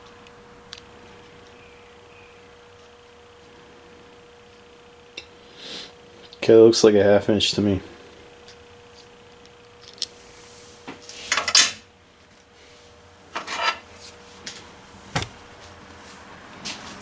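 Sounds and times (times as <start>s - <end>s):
metal parts scraping rattle: 13.4s - 13.8s.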